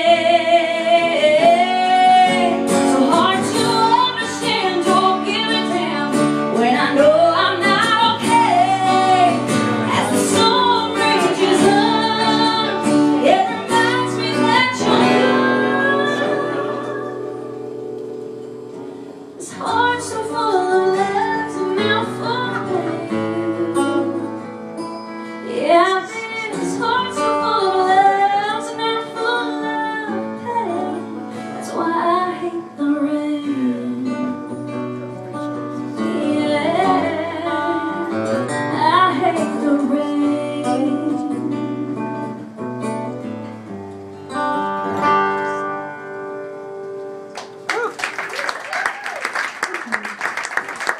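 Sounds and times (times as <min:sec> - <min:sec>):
woman singing: 0:00.0 - 0:17.8, 0:19.4 - 0:24.6, 0:25.4 - 0:42.7
acoustic guitar: 0:00.0 - 0:48.3.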